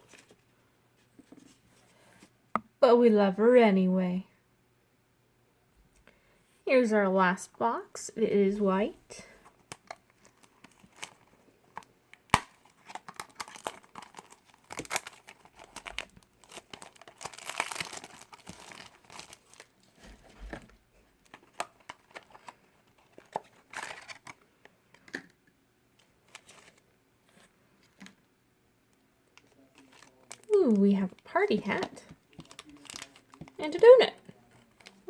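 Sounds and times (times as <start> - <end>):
cardboard and wrapping tearing: 10.2 - 11.4, 12.3 - 20.5, 21.2 - 24.4, 29.5 - 30.6, 31.7 - 33.6.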